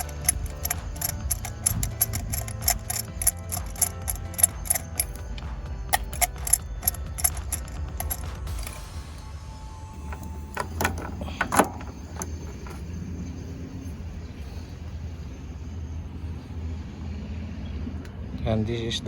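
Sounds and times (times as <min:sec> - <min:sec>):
metallic clicks of hand tools: 0:00.0 - 0:08.8, 0:10.1 - 0:12.8
steady low rumble: 0:00.0 - 0:19.0.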